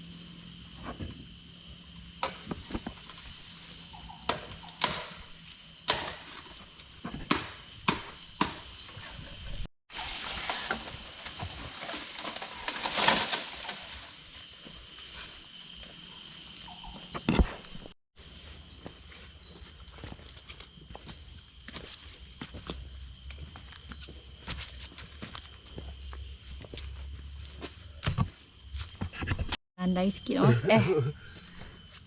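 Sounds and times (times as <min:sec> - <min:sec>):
high insect drone: 0:00.0 - 0:32.0
rustling undergrowth: 0:09.9 - 0:15.6
footsteps on forest trail: 0:17.7 - 0:29.5.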